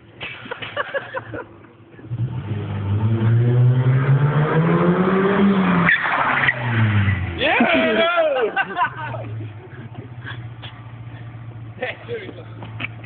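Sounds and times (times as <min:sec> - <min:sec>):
car engine revving hard: 0:02.1 - 0:07.4.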